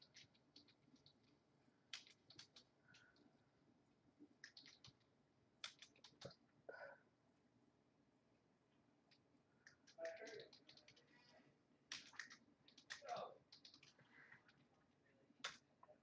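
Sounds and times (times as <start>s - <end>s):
faint keyboard typing: 0.0s - 3.4s, 4.2s - 6.6s, 9.0s - 14.8s, 15.4s - 16.0s.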